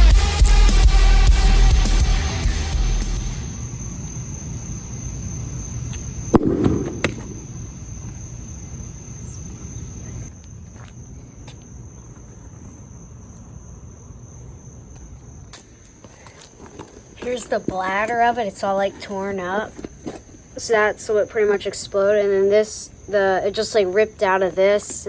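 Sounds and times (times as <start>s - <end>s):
football bursting with a bang: 6.4s - 7.8s
steady hum: 6.4s - 8.0s.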